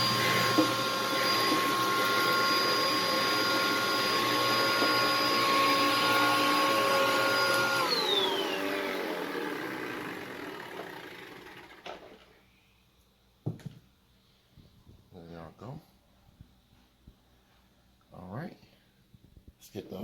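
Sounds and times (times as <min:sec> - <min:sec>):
power tool motor whining: 0:00.0 - 0:12.3.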